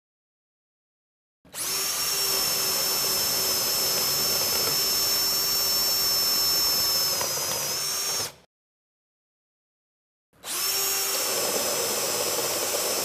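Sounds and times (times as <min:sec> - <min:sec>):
power drill boring into wood: 0:01.5 - 0:08.5, 0:10.4 - 0:13.0.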